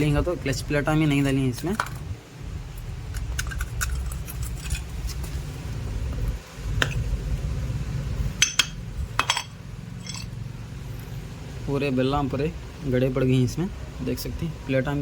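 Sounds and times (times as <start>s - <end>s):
steady low hum: 0.0s - 15.0s
metal parts clinking: 8.4s - 10.4s.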